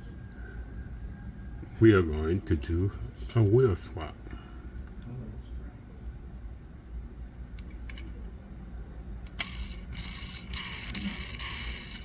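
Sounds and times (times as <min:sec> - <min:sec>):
toy car clicks: 0:09.3 - 0:12.0.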